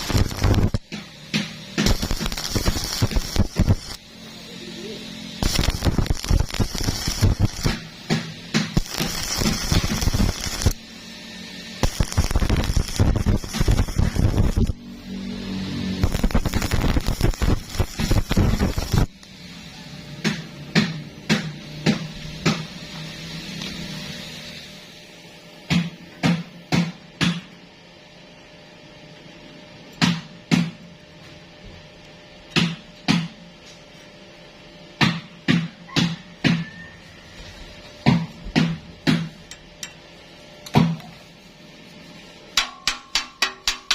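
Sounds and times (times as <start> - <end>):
welding arc crackling: 0.0 - 25.2, 38.6 - 43.9
hammer striking metal: 42.6 - 43.9.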